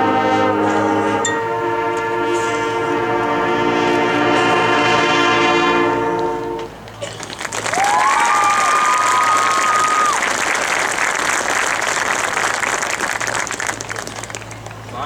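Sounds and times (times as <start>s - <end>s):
marching band brass chord: 0.0s - 7.0s
audience applause: 7.0s - 14.8s
audience whistles: 7.3s - 10.9s.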